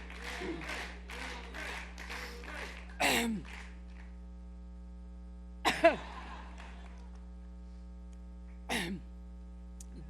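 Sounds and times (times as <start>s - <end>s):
electrical hum: 0.0s - 10.0s
woman coughing: 3.0s - 3.4s, 5.6s - 6.0s, 8.7s - 9.0s.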